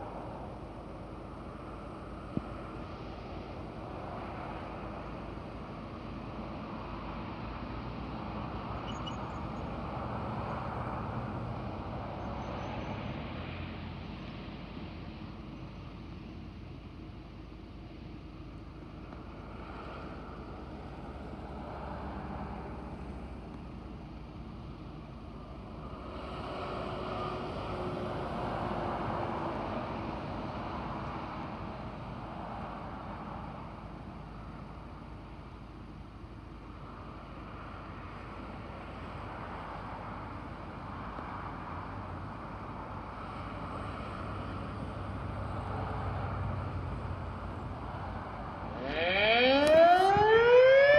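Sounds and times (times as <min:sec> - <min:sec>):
vehicle passing on road: 0:36.9 - 0:50.9
distant warning siren: 0:48.6 - 0:50.9.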